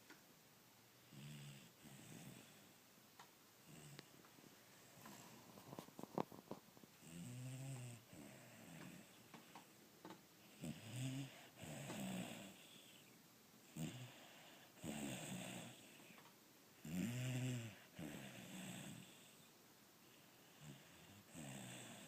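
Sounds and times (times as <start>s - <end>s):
person snoring: 10.6s - 13.0s, 13.8s - 16.0s, 16.8s - 19.4s.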